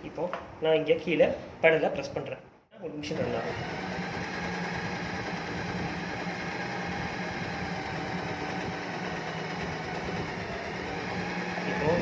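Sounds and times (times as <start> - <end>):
sewing machine motor humming: 3.1 - 12.0.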